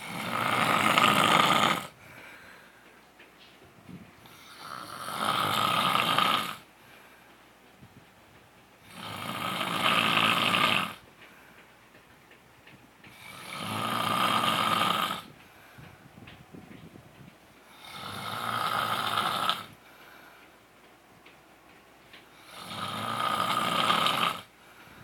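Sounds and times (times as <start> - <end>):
man snoring heavily: 0.0 - 2.0, 4.3 - 6.7, 8.8 - 11.0, 13.1 - 15.3, 17.7 - 19.8, 22.4 - 24.5
quiet breathing: 0.0 - 8.0, 8.8 - 12.0, 13.0 - 16.7, 17.6 - 20.9, 22.1 - 25.0.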